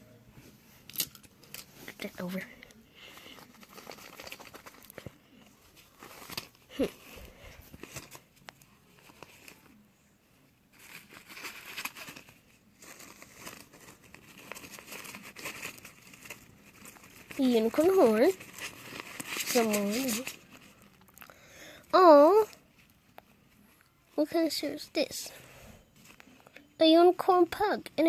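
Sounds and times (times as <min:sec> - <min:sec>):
wrapping paper crinkling and tearing: 0:03.0 - 0:09.8, 0:10.7 - 0:21.2.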